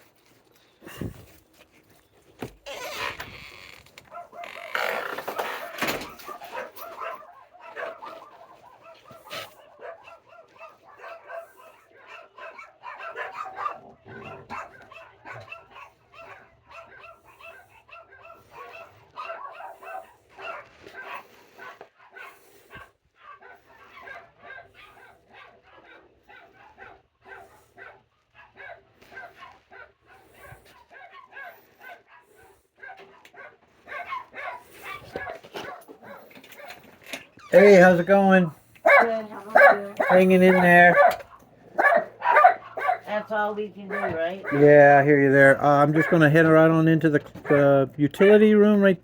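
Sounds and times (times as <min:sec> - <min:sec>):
dogs barking and yipping: 0:03.9 - 0:44.7, 0:45.5 - 0:48.8.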